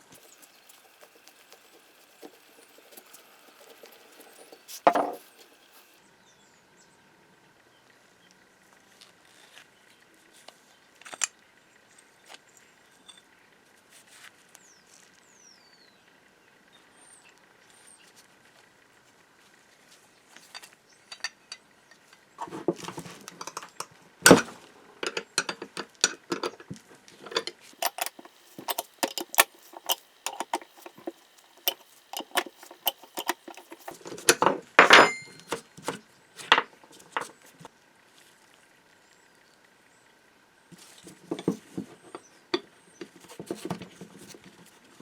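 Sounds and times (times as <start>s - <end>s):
small metal parts clinking: 0.0s - 6.0s, 27.2s - 35.6s.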